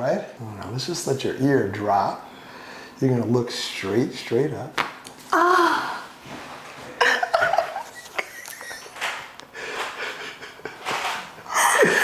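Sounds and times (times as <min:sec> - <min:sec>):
woman laughing and breathing heavily: 0:06.9 - 0:12.0.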